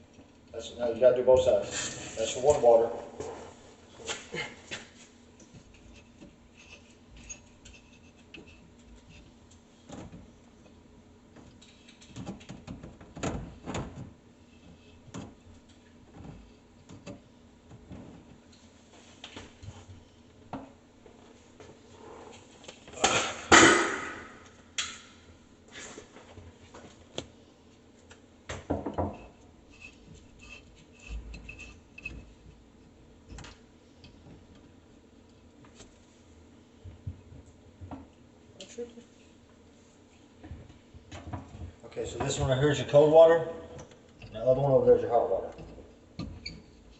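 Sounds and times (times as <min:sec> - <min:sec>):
rustling scrape: 0:01.6 - 0:02.4.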